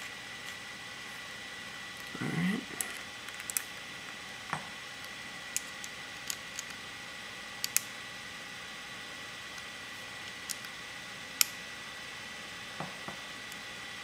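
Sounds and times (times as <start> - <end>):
small metal and plastic clicks: 2.8 - 3.7, 5.6 - 6.8, 7.6 - 7.9.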